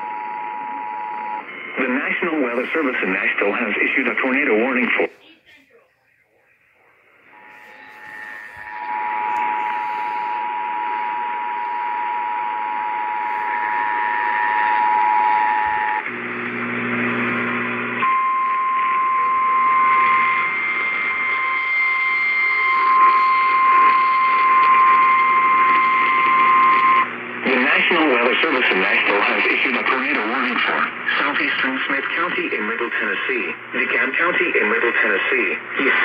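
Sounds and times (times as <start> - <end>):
radio static: 0.0 - 36.0.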